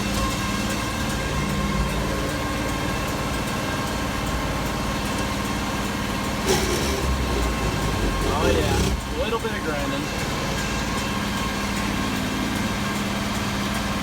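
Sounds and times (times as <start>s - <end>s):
tractor diesel engine running: 0.0s - 14.0s
loud grinding noise: 6.2s - 13.2s.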